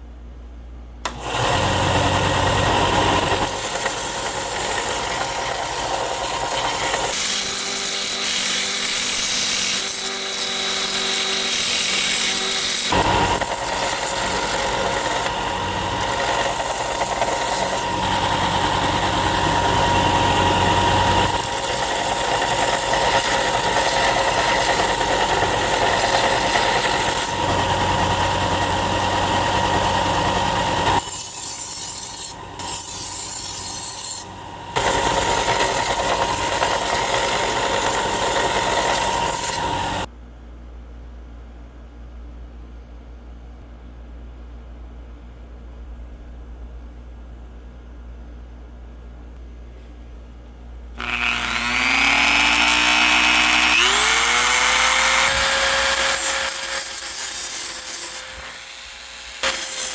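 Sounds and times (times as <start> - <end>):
power tool motor whine: 1.1 - 40.1, 51.0 - 59.9.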